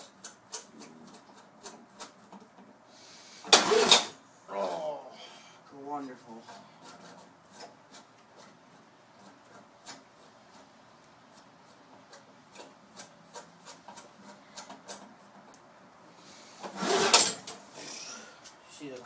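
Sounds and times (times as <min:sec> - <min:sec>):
light rubbing: 0:05.9 - 0:19.0.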